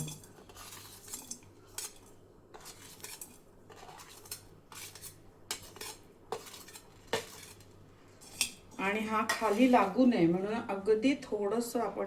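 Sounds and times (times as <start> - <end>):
metal spoon clinking on pan: 0.0 - 0.3.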